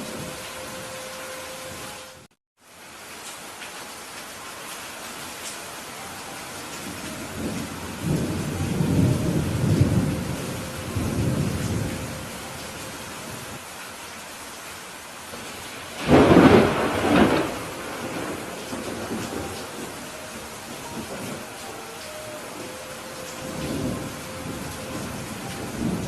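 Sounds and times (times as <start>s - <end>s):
rain on a roof: 0.0s - 26.0s
rolling thunder: 6.9s - 12.3s, 15.4s - 21.6s, 22.6s - 26.0s
sharp thunderclap: 16.0s - 19.8s.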